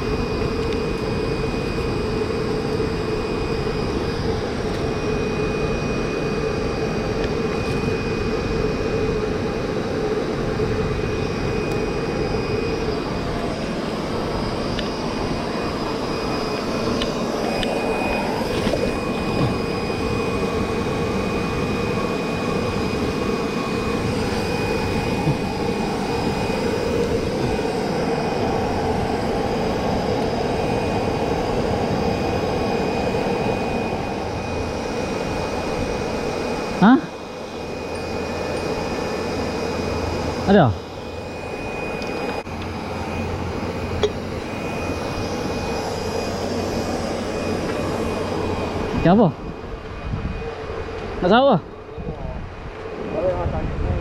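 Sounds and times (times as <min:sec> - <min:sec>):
machine drone: 0:00.0 - 0:54.0.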